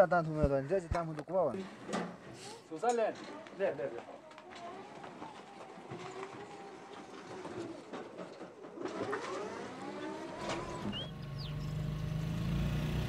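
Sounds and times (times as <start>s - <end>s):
engine humming: 4.4s - 13.0s
birds calling: 10.4s - 12.4s.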